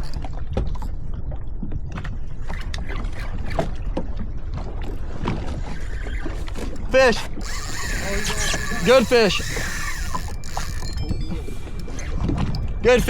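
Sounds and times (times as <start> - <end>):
water lapping against hull: 0.0 - 13.0.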